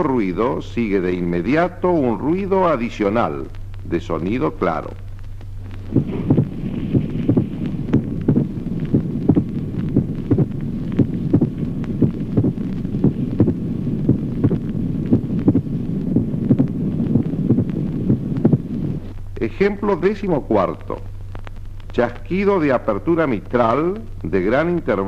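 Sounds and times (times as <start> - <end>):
low hum: 0.0 - 25.0
heartbeat through stethoscope: 3.4 - 19.7
extra clear heartbeat knock: 5.8 - 18.8.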